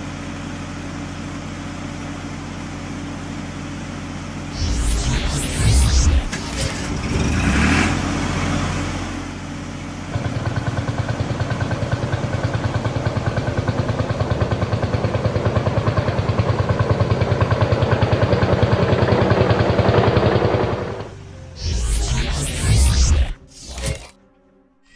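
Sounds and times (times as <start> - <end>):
whoosh: 4.6 - 8.0, 21.6 - 24.2.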